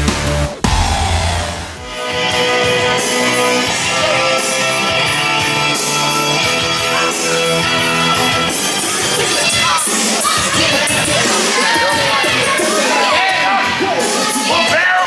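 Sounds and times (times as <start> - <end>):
loud guitar rock music: 0.0 - 2.3.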